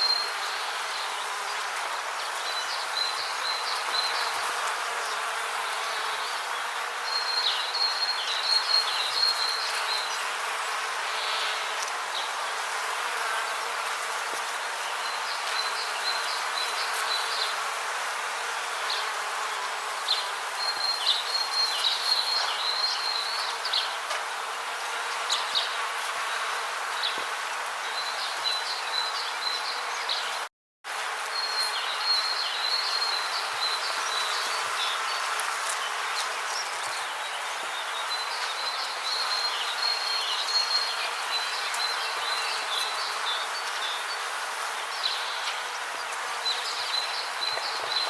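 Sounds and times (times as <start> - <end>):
steady rainforest hiss: 30.9 - 48.0.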